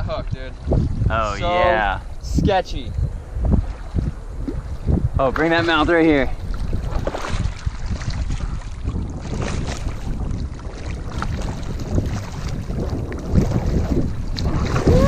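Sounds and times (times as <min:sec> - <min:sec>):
wind rumbling on microphone: 0:00.0 - 0:15.0
water sloshing against boat: 0:03.2 - 0:15.0.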